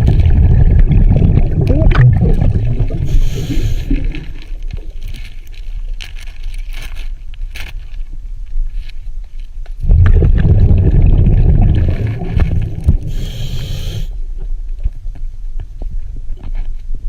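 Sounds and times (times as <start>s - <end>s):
diver exhaling bubbles: 0.0s - 4.6s, 9.8s - 14.1s
breath hissing through regulator: 2.8s - 4.4s, 12.9s - 14.2s.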